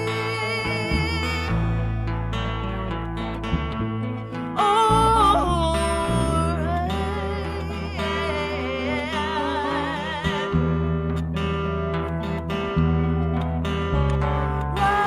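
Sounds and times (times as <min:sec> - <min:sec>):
woman singing with vibrato: 0:00.0 - 0:02.0, 0:04.6 - 0:11.1, 0:14.2 - 0:15.0
guitar accompaniment: 0:00.0 - 0:15.0.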